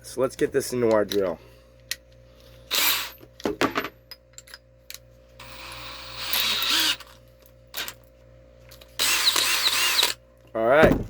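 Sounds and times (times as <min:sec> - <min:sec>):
drill chuck rattling: 0:05.4 - 0:07.2, 0:09.0 - 0:10.2.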